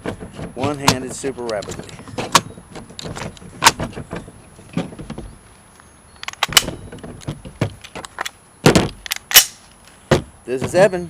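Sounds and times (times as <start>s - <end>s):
rifle metallic clicks: 6.2s - 6.8s, 7.8s - 9.7s.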